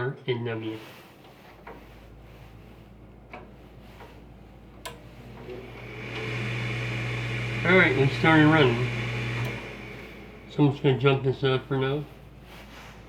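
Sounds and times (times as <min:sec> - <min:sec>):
furnace motor starting: 0:04.8 - 0:12.2.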